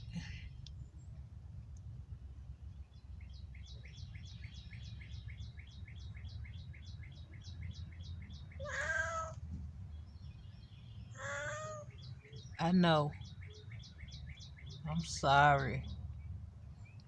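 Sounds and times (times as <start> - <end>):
steady low rumble: 0.0 - 8.6
bird chirping: 2.4 - 17.0
cat meowing: 8.6 - 9.4, 11.2 - 11.9.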